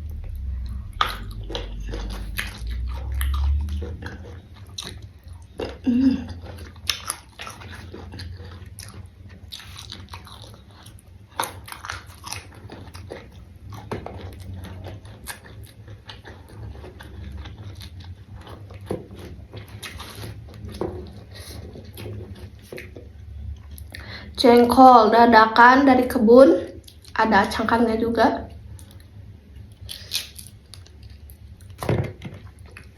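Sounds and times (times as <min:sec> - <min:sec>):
crunching and chewing: 0:00.0 - 0:24.4, 0:26.8 - 0:27.2, 0:28.6 - 0:32.9
steady low hum: 0:00.0 - 0:32.9.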